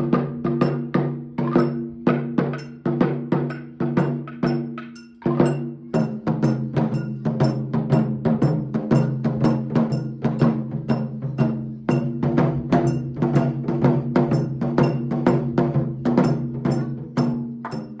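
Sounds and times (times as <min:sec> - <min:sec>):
drum ensemble playing: 0:00.0 - 0:18.0.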